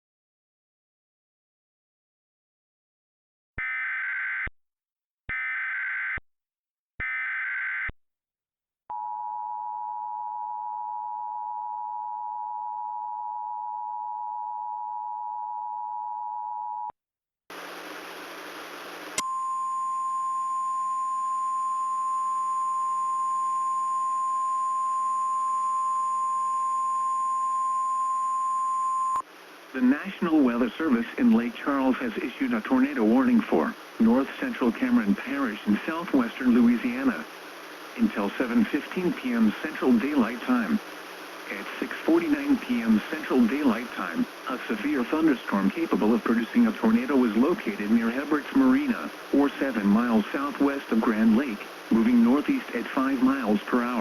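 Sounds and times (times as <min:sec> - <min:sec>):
single-tone warning alarm: 0:03.6 - 0:04.5, 0:05.3 - 0:06.2, 0:07.0 - 0:07.9, 0:19.2 - 0:29.2
radio hiss: 0:17.5 - 0:19.2, 0:29.2 - 0:54.0.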